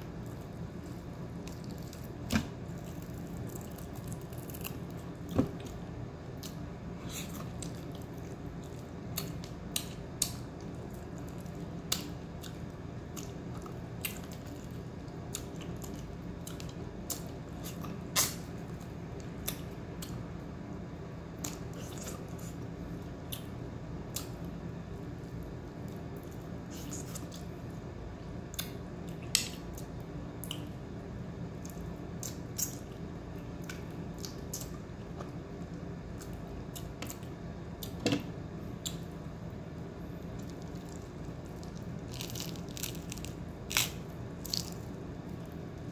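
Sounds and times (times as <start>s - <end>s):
steady low hum: 0.0s - 45.9s
wet chewing and smacking: 40.2s - 45.8s.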